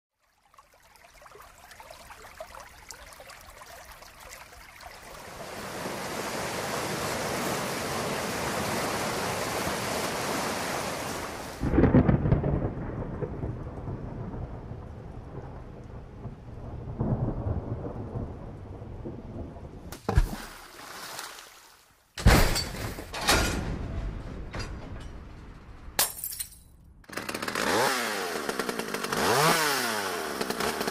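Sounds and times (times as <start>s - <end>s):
steady rain: 0.4s - 19.9s
thunder clap and rumble: 11.6s - 19.9s, 23.3s - 26.0s.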